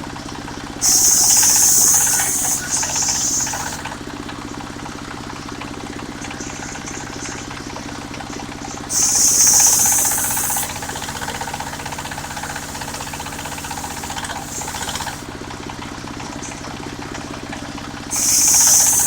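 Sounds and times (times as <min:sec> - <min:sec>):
saw blade cutting wood: 0:00.8 - 0:03.9, 0:08.9 - 0:15.3, 0:18.1 - 0:19.0
sawmill engine running: 0:00.8 - 0:04.1, 0:08.9 - 0:15.4, 0:18.1 - 0:19.0.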